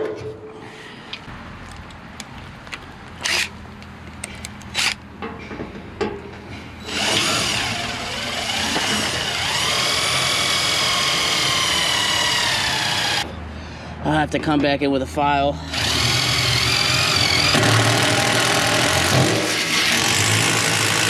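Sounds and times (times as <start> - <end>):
electric drill whining: 6.8 - 13.2, 15.7 - 21.0.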